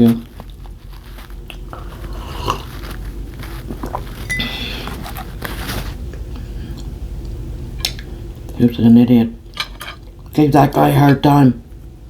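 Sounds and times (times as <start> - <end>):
steady low hum: 0.0 - 12.0
short ringing clink: 4.3 - 4.7.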